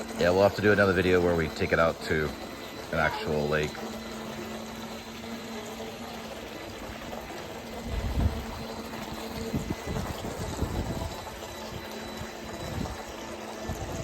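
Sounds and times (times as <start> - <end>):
water churning from boat: 0.0 - 14.0.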